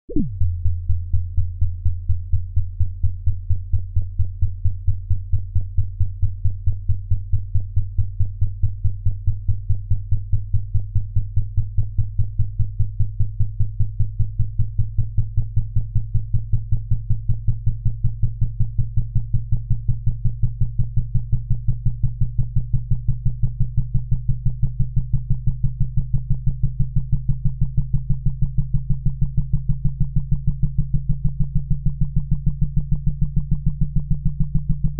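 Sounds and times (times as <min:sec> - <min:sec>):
pulsing low synthesized tone: 0:00.0 - 0:05.7, 0:20.6 - 0:34.9.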